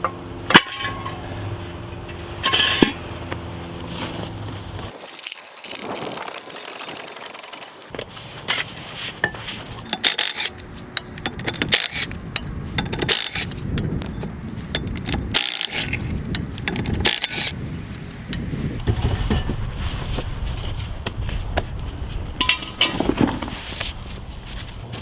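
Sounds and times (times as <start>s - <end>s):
ratchet wrench clicking: 9.9s - 17.6s.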